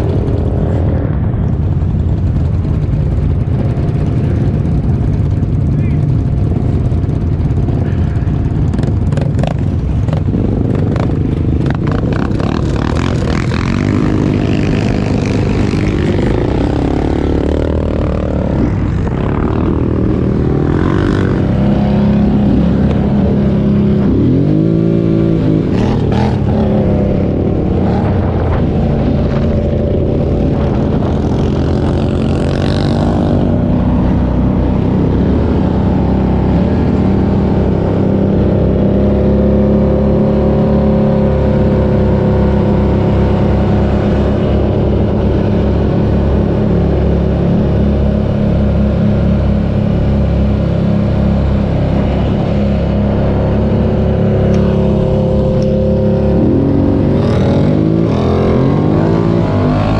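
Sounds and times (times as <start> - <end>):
atv engine revving: 0.0 - 59.9.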